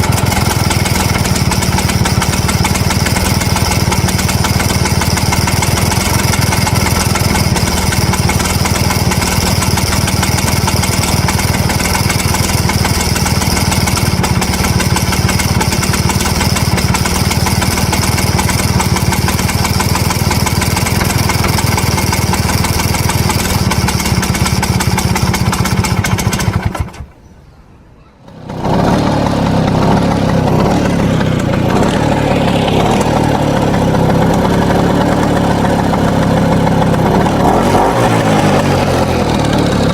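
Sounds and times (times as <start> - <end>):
scooter engine idling with rattle: 0.0 - 27.3, 28.2 - 39.9.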